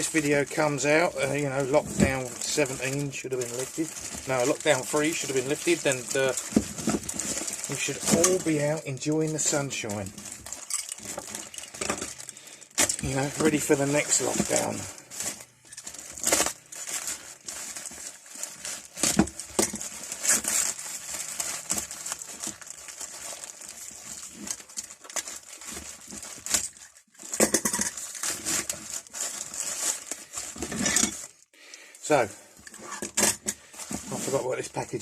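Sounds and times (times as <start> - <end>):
packaging crinkling and tearing: 0.0 - 31.5, 33.5 - 35.0.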